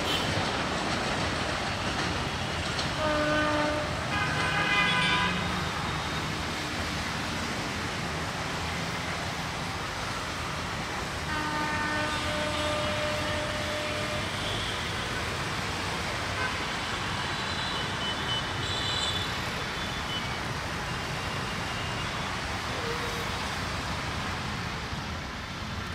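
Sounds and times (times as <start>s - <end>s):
rail and road traffic rumble: 0.0s - 25.9s
horn blasts: 3.0s - 6.1s, 11.3s - 15.2s.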